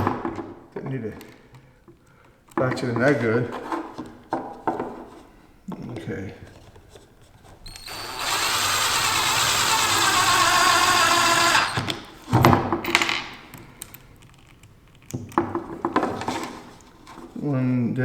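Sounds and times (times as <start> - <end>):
impact driver driving screw: 7.7 - 12.1.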